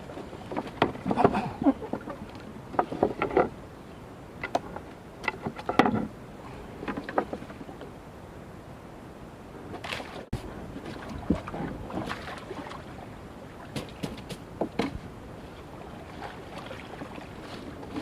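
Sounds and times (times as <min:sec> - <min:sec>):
steady background hiss: 0:00.0 - 0:18.0
water splashing and knocking: 0:13.6 - 0:15.0.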